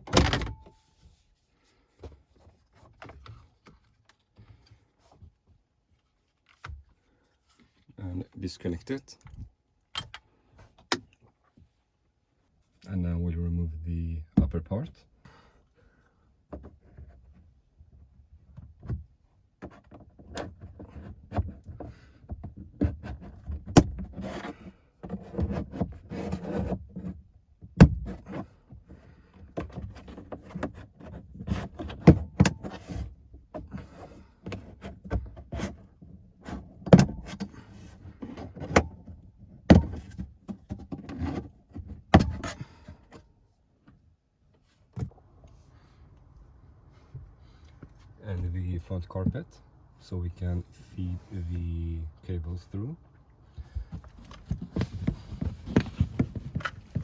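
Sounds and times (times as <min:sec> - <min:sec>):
plastic panel rustling and rattling: 0:18.4 - 0:43.3, 0:53.6 - 0:57.0.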